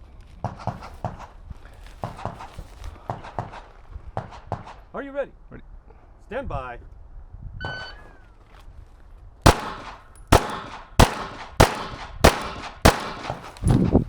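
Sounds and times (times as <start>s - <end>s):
pistol shots: 9.5s - 13.8s.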